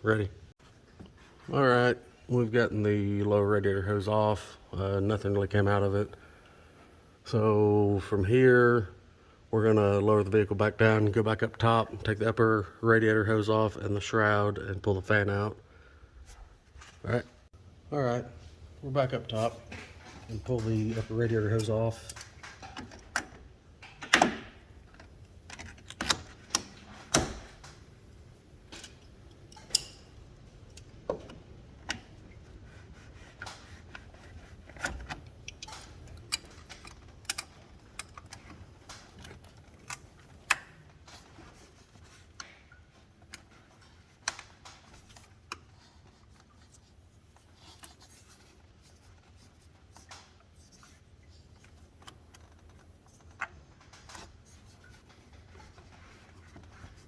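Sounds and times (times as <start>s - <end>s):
hand tools clicking and knocking: 19.7s - 27.8s, 28.6s - 32.3s, 33.3s - 40.7s.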